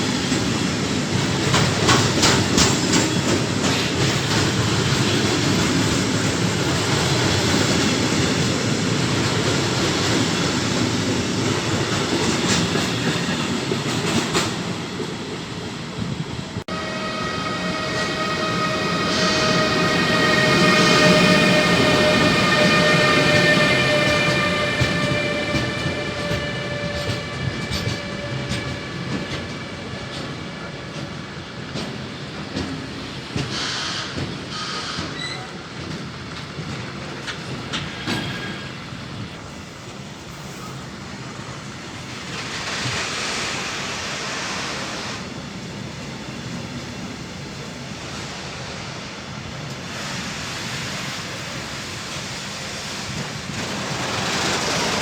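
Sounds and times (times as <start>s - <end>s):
train wheels clattering: 0.0s - 15.3s, 17.4s - 39.4s, 49.6s - 55.0s
electric locomotive whine: 15.0s - 35.7s, 36.3s - 55.0s.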